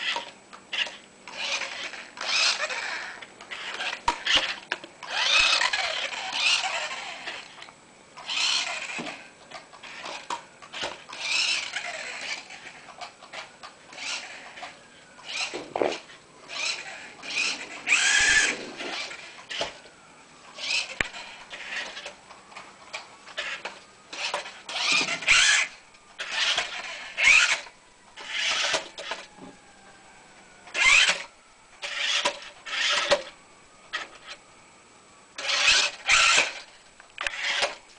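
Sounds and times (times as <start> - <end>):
toy car electric motor whirring: 0.0 - 29.7, 30.6 - 34.5, 35.4 - 37.9.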